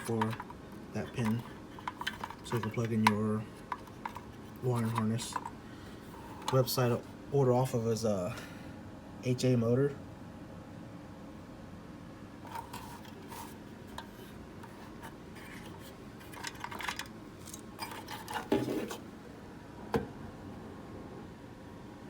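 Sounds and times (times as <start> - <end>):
small parts and tools handled: 0.0 - 7.0, 12.4 - 19.1.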